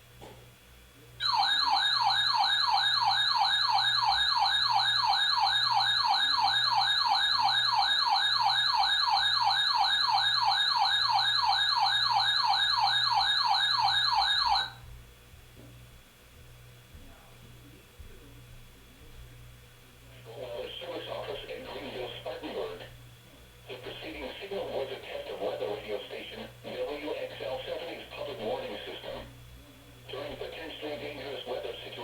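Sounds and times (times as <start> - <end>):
electronic siren-like alarm tone: 1.2 - 14.8.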